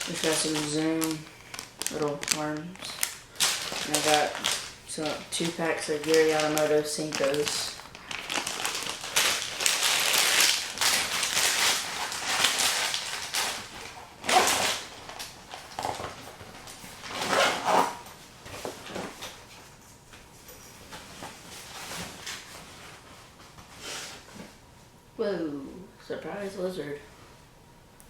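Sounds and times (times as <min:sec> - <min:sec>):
plastic packaging rustling: 0:00.0 - 0:19.7.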